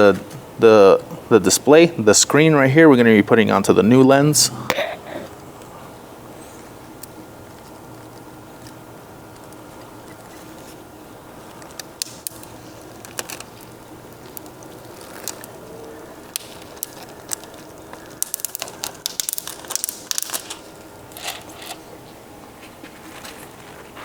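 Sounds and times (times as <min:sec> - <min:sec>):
small plastic parts clicking: 0:16.3 - 0:21.8.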